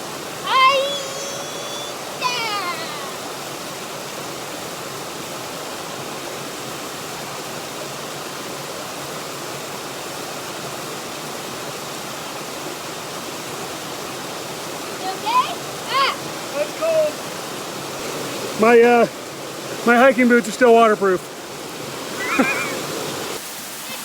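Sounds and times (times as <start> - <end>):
waterfall roaring: 0.0 - 24.0
short falling call: 0.4 - 3.4.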